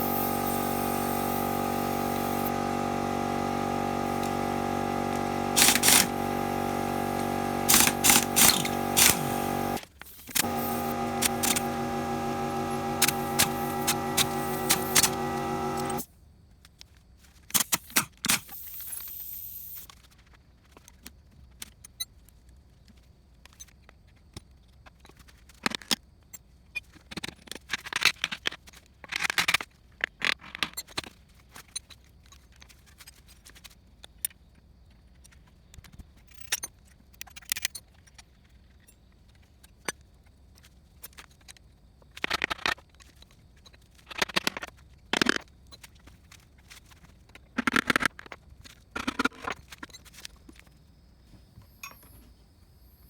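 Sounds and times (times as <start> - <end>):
steady hum: 0.0 - 16.0.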